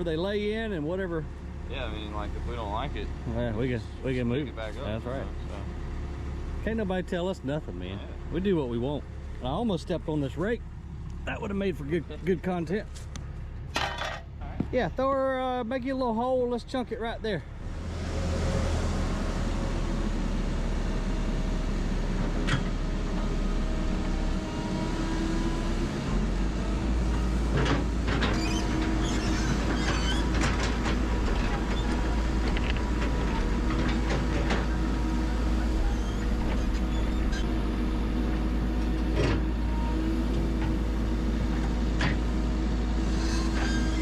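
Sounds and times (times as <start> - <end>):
excavator running: 0.0 - 44.0.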